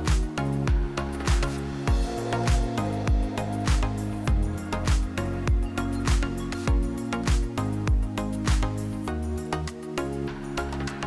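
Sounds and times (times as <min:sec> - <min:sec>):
sustained synth chords: 0:00.0 - 0:08.4
deep kick drum: 0:00.1 - 0:08.7.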